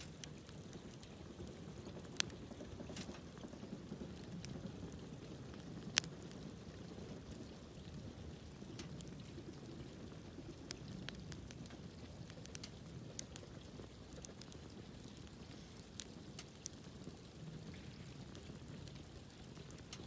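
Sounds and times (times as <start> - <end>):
campfire pops and snaps: 0.0 - 20.0.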